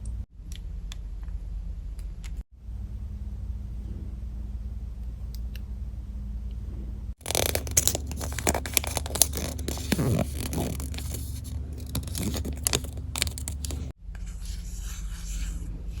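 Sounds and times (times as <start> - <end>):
wrapping tearing and crinkling: 7.2 - 13.9.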